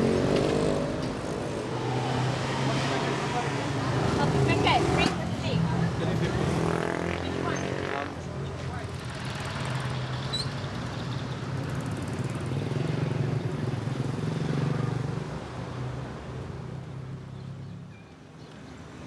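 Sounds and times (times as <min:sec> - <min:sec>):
vehicle engine passing: 0:00.0 - 0:10.0.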